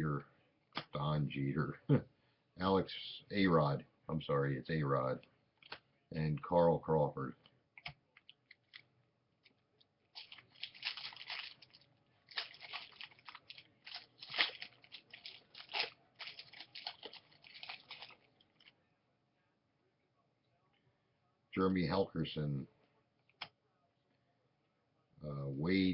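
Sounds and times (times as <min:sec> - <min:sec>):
foil wrapper tearing and crinkling: 0:10.2 - 0:18.7.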